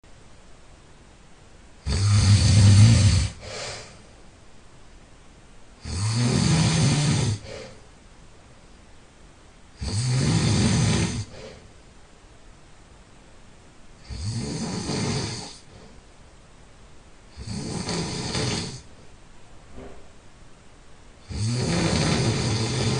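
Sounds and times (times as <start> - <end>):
person snoring: 1.8 - 4.0, 5.8 - 7.8, 9.8 - 11.7, 14.0 - 16.0, 17.3 - 18.9, 21.2 - 22.9
faint breath: 3.2 - 4.2, 7.3 - 7.9, 11.0 - 11.8, 15.4 - 16.1.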